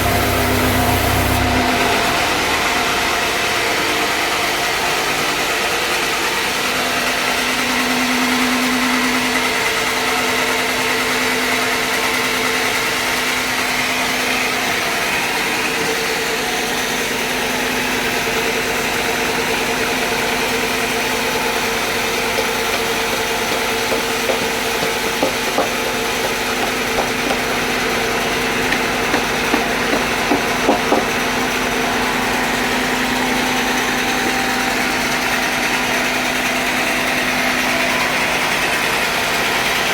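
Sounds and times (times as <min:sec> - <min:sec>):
sawmill engine running: 0:00.0 - 0:39.9
short sharp knocks: 0:22.4 - 0:27.6.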